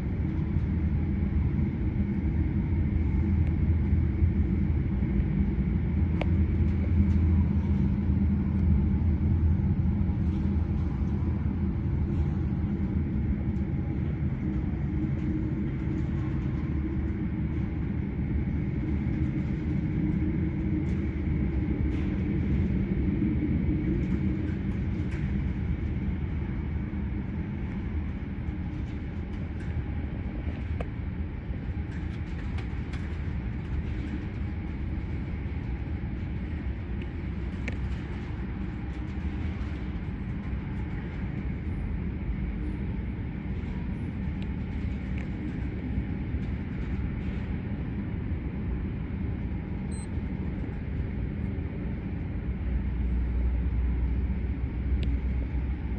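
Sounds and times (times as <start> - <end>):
faint high whine: 49.8 - 51.4.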